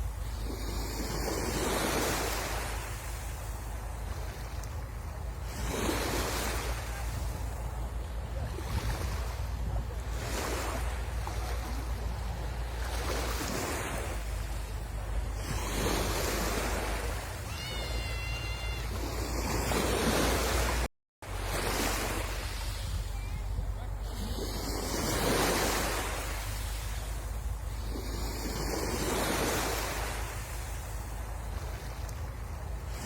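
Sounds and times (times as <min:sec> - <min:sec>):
wind rumble on microphone: 0:00.0 - 0:17.5, 0:18.8 - 0:33.0
waves breaking on shore: 0:00.0 - 0:33.0.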